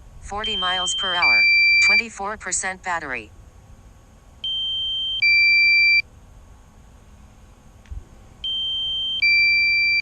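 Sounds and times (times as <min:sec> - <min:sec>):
two-note electronic warning beep: 0:00.4 - 0:02.1, 0:04.4 - 0:06.0, 0:08.4 - 0:10.0.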